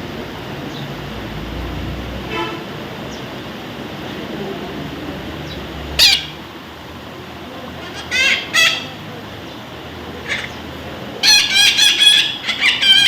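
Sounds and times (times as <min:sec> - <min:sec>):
low rumble of outdoor noise: 0:00.0 - 0:13.0
parrot squawking: 0:06.0 - 0:06.4, 0:07.8 - 0:09.0, 0:10.2 - 0:13.0.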